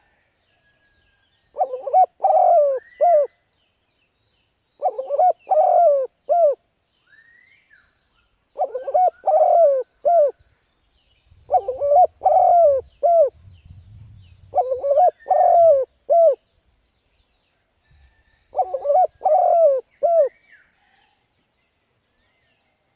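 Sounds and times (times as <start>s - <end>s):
dove cooing: 1.6s - 3.3s, 4.8s - 6.6s, 8.6s - 10.4s, 11.5s - 13.4s, 14.5s - 16.4s, 18.5s - 20.4s.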